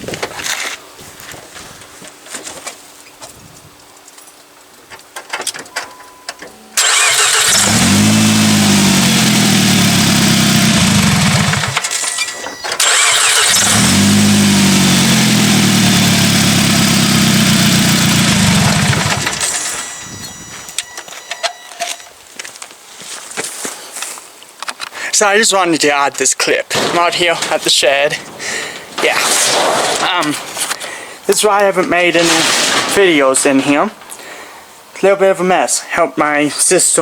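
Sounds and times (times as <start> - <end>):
car engine cranking: 6.4 - 22.0.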